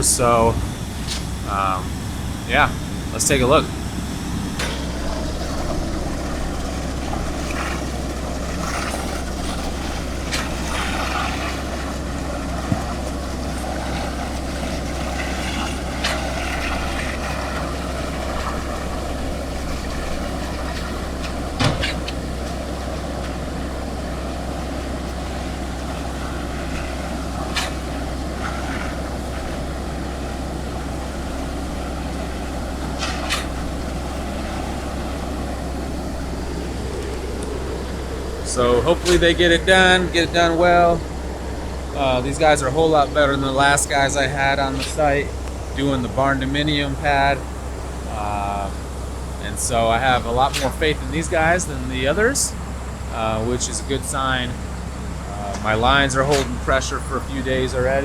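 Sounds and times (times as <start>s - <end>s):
knocks and clanks: 0.0s - 40.0s
truck engines droning: 0.0s - 58.0s.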